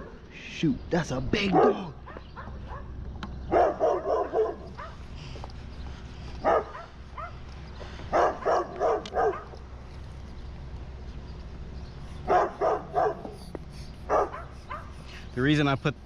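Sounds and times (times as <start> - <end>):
big dog barking: 1.4 - 5.1, 6.4 - 7.5, 8.1 - 9.6, 12.2 - 13.4, 14.0 - 15.0.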